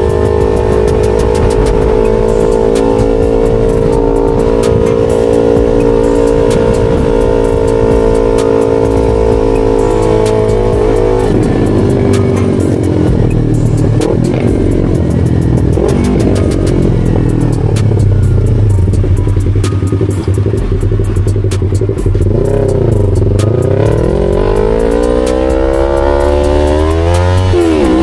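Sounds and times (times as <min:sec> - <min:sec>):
motorcycle engine running: 0:00.0 - 0:28.0
music playing: 0:00.0 - 0:28.0.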